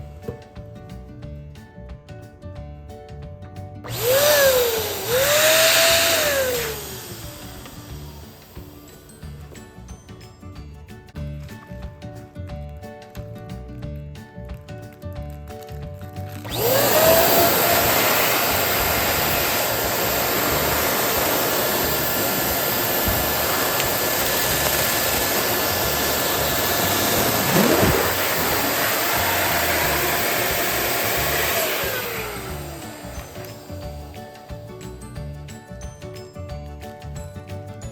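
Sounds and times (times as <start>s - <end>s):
electric balloon pump running: 3.8s - 9.7s, 16.2s - 34.7s.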